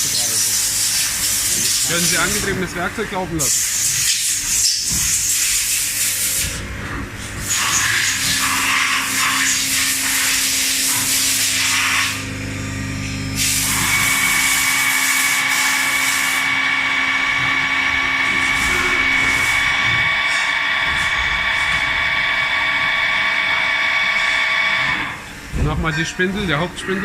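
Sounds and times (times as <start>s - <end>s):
high-pitched motor whine: 0.0s - 27.0s
low machine hum: 6.4s - 27.0s.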